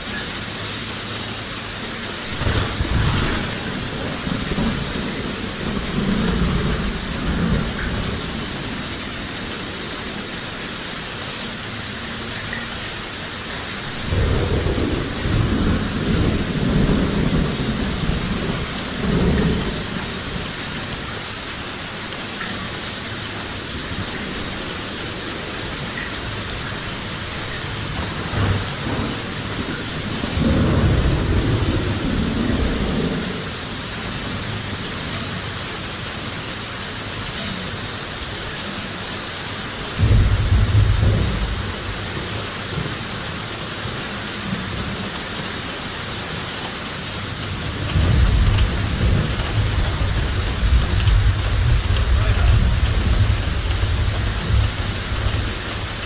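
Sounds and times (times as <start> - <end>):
heavy rain hissing: 0.0 - 56.0
thunder rumbling: 2.2 - 10.2, 13.8 - 21.3, 23.6 - 34.7, 39.8 - 43.2, 47.2 - 56.0.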